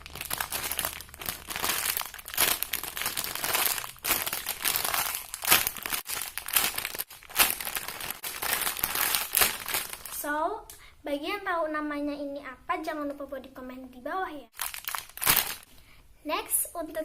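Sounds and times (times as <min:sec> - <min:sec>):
plastic packaging crinkling: 0:00.0 - 0:10.2, 0:14.5 - 0:15.7.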